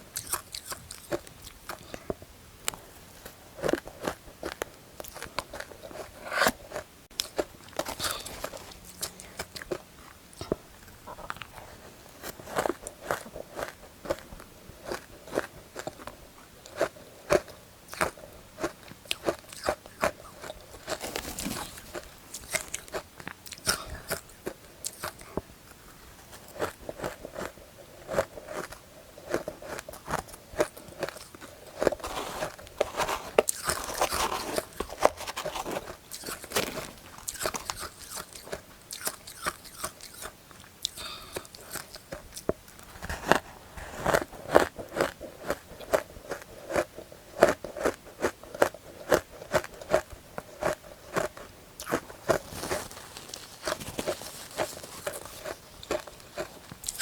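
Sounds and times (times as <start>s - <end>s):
soft chewing: 0.0s - 57.0s
ice crunching: 20.4s - 22.9s, 31.2s - 38.4s, 51.9s - 57.0s.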